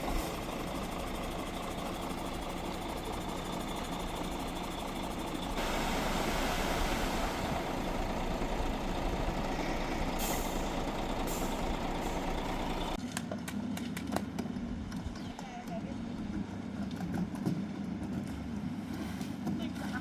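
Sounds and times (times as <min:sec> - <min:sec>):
heavy truck engine running: 0:00.0 - 0:13.0.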